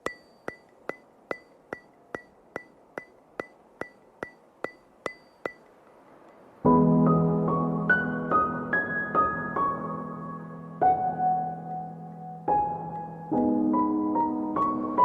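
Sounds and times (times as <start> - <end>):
sharp ringing clicks: 0.0 - 6.4
soft ambient piano music: 6.3 - 15.0.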